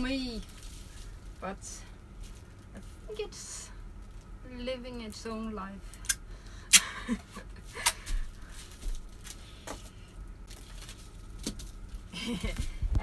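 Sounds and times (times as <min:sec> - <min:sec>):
soft rustling: 0:00.0 - 0:04.4, 0:07.4 - 0:13.0.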